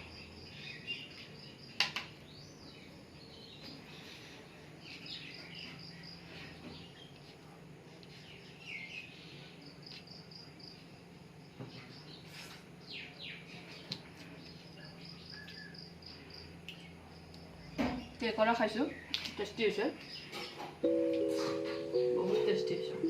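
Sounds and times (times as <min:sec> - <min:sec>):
low steady hum: 0:14.0 - 0:23.0.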